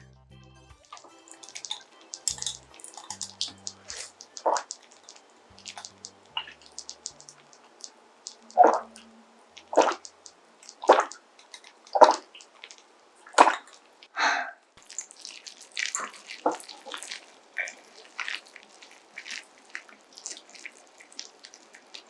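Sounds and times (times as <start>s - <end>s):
person chewing wetly: 3.9s - 12.8s, 14.8s - 22.0s.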